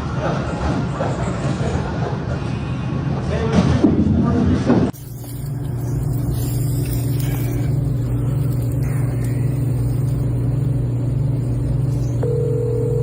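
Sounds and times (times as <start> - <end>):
low mechanical engine hum: 5.0 - 13.0.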